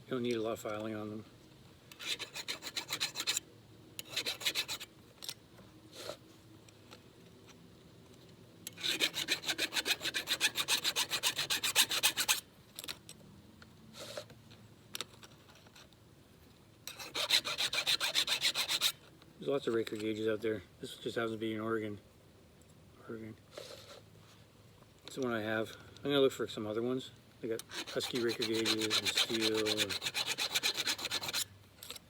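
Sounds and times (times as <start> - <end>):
file rasping on saw chain: 2.0 - 3.4, 4.0 - 4.9, 8.7 - 12.4, 16.9 - 19.0, 27.6 - 31.5.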